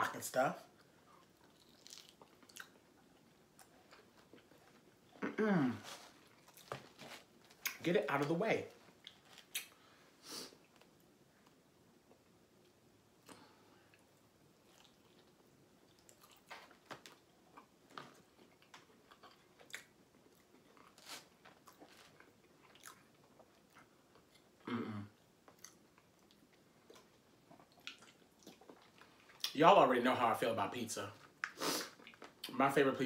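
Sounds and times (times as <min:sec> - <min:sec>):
chewing food: 0:01.0 - 0:05.2, 0:12.1 - 0:24.6, 0:25.4 - 0:29.6.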